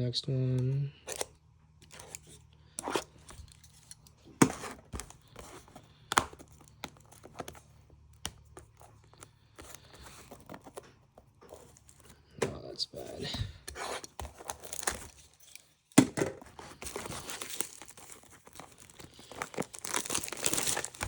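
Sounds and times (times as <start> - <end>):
packaging tearing and crinkling: 13.8 - 15.7, 16.4 - 21.0.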